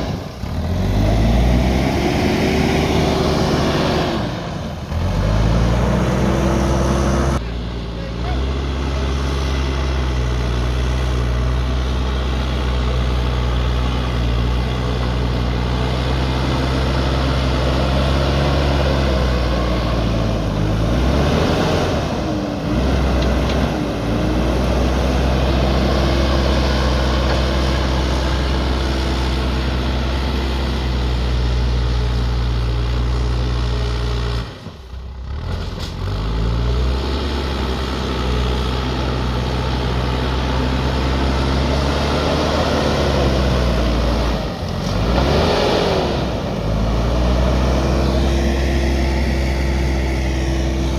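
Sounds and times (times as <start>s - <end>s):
diesel engine running: 0.0s - 50.9s.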